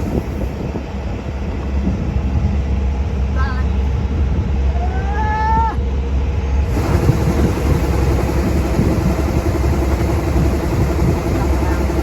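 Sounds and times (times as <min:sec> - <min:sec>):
engine running with deep hum: 0:00.0 - 0:12.0
fast even rattle: 0:06.7 - 0:12.0.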